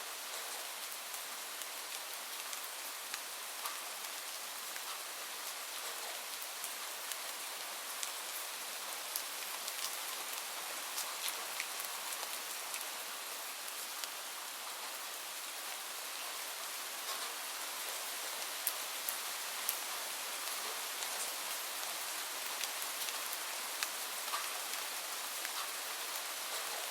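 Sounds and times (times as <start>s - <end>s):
light rain hiss: 0.0s - 26.9s
raindrop patters: 17.1s - 18.0s.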